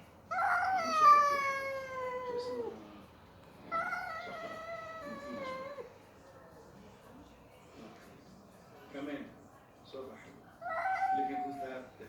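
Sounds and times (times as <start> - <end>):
cat yowling: 0.3 - 2.7, 3.7 - 5.9, 10.6 - 11.7.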